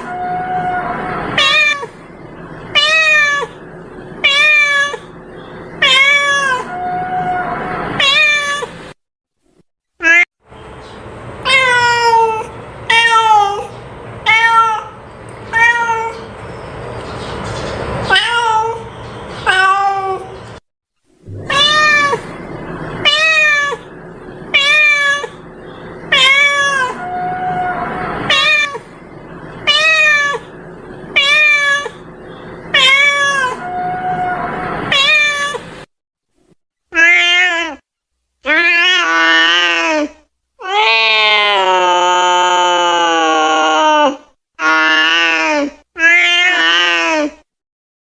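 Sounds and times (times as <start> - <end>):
cat meowing: 0.0 - 2.0, 2.7 - 3.6, 4.2 - 5.1, 5.8 - 8.8, 11.4 - 13.7, 14.3 - 16.3, 18.1 - 20.4, 21.3 - 22.4, 23.0 - 23.9, 24.5 - 25.4, 26.1 - 28.9, 29.6 - 30.5, 31.1 - 32.1, 32.7 - 35.7, 37.0 - 37.8, 46.0 - 47.3.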